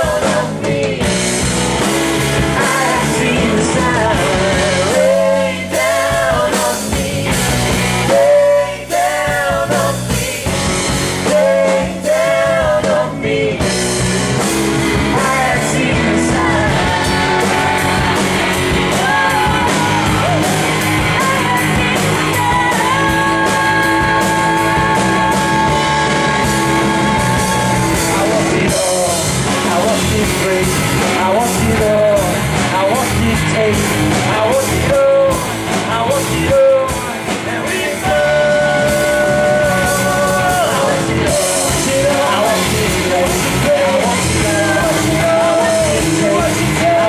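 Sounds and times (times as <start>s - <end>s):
live rock band: 0.0s - 47.0s
wordless wailed vocals: 18.9s - 29.0s.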